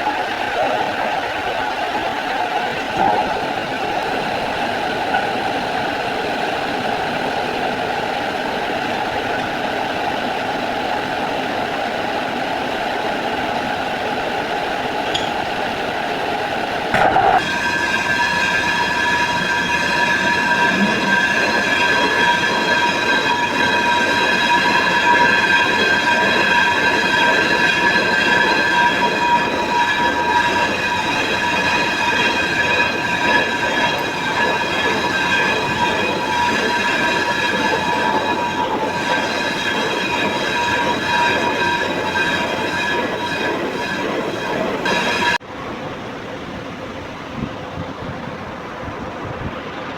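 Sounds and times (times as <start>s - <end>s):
rough grinding noise: 0.0s - 9.7s, 14.2s - 45.4s
milling cutter squealing on metal: 15.0s - 15.6s, 17.0s - 45.4s.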